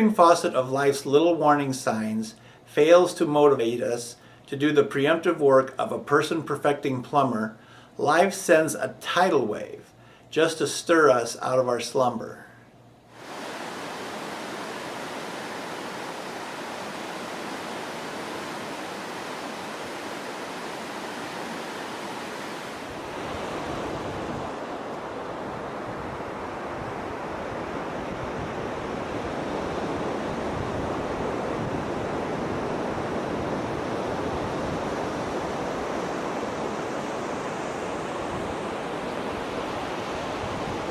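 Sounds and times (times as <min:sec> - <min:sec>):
rushing water hiss: 0:13.2 - 0:25.6.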